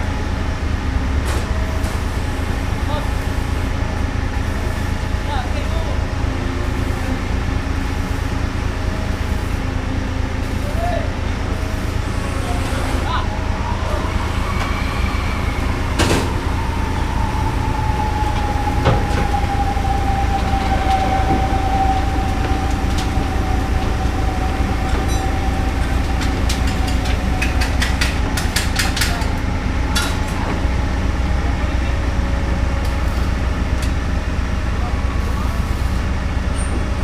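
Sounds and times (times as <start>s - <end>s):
heavy diesel engine rumbling: 0.0s - 37.0s
long whine sinking in pitch: 12.2s - 35.5s
sharp clicks and knocks: 24.8s - 29.4s.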